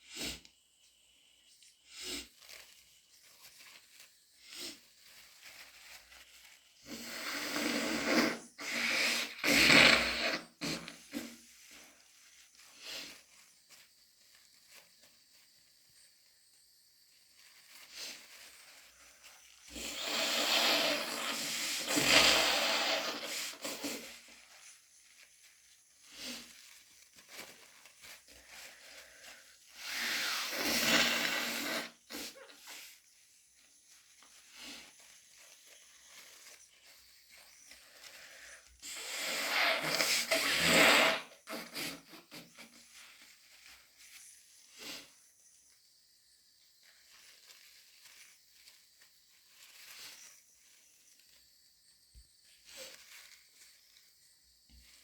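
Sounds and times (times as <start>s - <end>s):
woman blowing her nose: 6.8s - 11.4s, 19.7s - 24.3s, 29.1s - 32.8s, 38.3s - 42.7s
woman sniffling: 19.7s - 24.3s.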